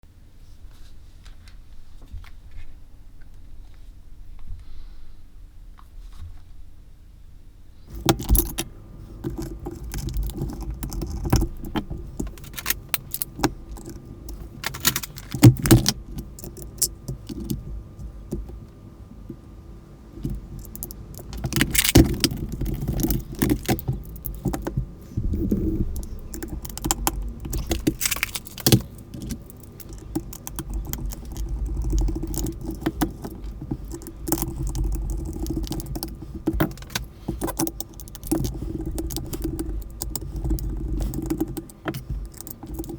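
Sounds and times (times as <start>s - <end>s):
plastic parts clicking and rattling: 7.9s - 18.7s, 20.1s - 42.9s.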